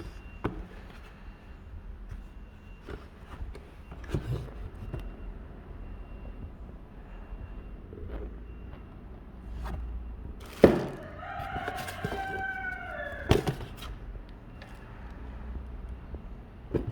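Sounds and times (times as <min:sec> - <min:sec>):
rooster crowing: 0:10.5 - 0:14.0.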